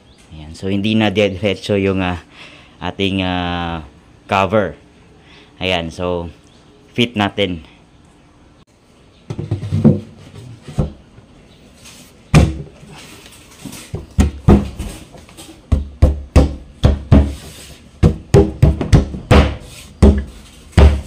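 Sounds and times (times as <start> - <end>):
knocks on plywood box: 9.3 - 10.2, 12.3 - 12.8, 13.9 - 15.0, 15.7 - 21.0.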